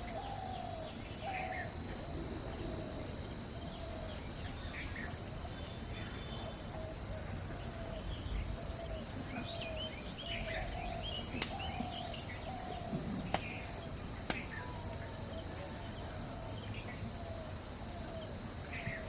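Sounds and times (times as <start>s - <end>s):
small birds chirping: 0.0s - 19.0s
low falling bird call: 3.7s - 17.5s.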